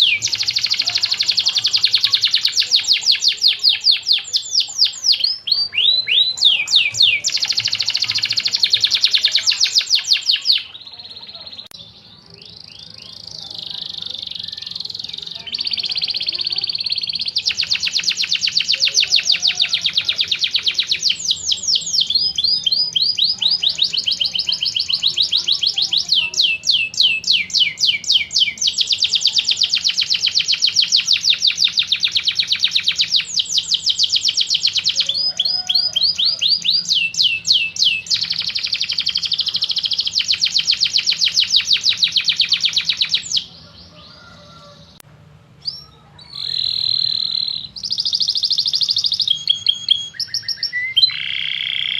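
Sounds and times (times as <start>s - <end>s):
canary singing trills: 0.0s - 51.9s.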